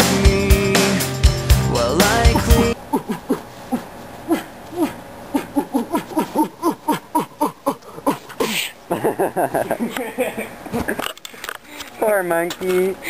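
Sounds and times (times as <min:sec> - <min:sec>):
person hooting rapidly: 0:01.8 - 0:08.7.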